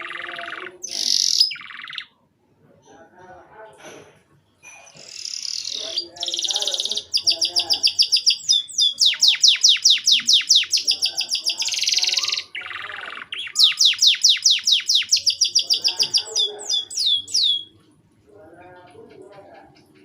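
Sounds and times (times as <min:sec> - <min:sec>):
canary singing rapid trills: 0:00.0 - 0:02.2, 0:04.7 - 0:17.8.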